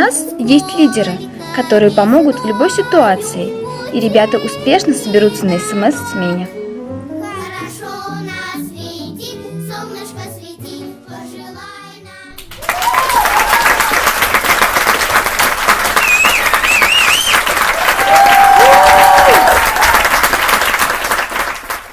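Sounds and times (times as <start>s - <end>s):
children's song: 0.0s - 12.6s
audience applause: 12.4s - 21.9s
cheering shouts and whistles: 12.6s - 14.0s, 16.0s - 20.1s.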